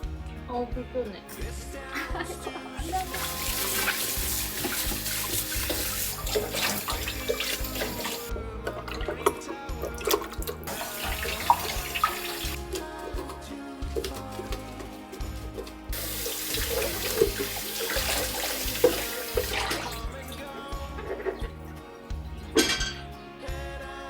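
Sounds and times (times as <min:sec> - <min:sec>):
background music: 0:00.0 - 0:24.0
tap water running into sink: 0:02.8 - 0:13.3, 0:14.0 - 0:21.4.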